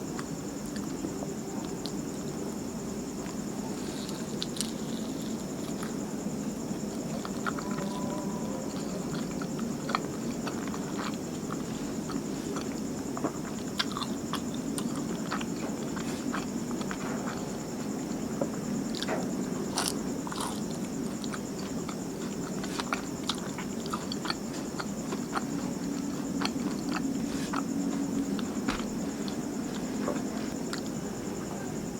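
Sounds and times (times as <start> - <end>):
low background hum: 0.0 - 31.9
person chewing: 7.0 - 17.4, 19.7 - 31.0.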